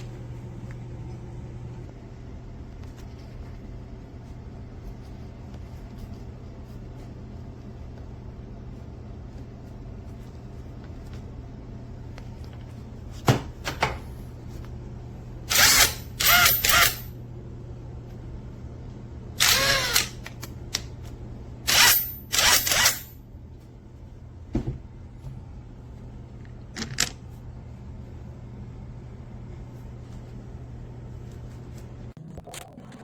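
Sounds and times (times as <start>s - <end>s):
impact wrench bursts: 15.5s - 17.1s, 19.4s - 20.2s, 21.7s - 23.1s.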